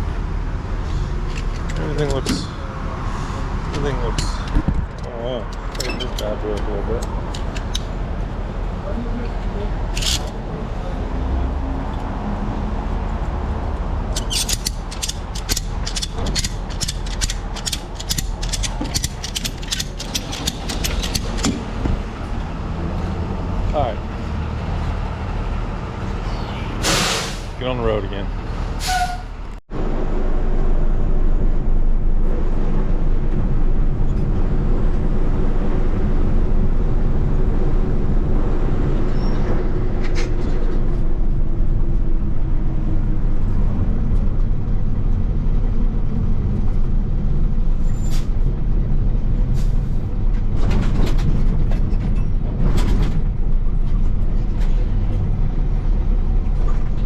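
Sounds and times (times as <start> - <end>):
engine and road noise drone: 0.0 - 57.0
brief clicks and rattles: 14.2 - 21.7.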